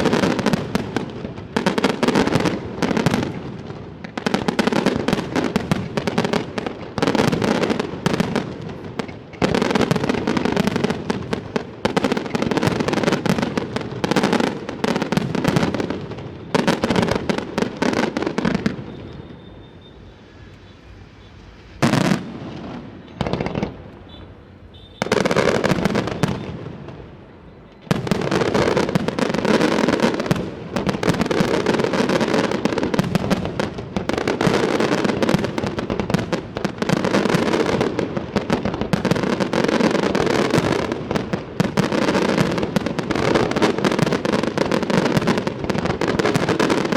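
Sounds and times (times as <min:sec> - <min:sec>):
fireworks crackling: 0:00.0 - 0:46.9.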